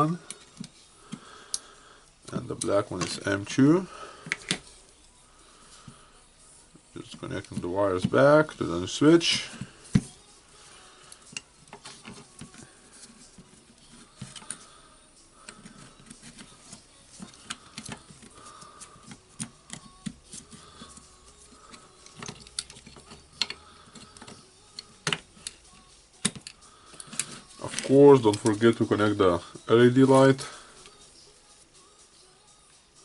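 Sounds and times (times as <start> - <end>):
clicks and taps of wire connectors: 21.7 - 25.6, 26.2 - 28.6.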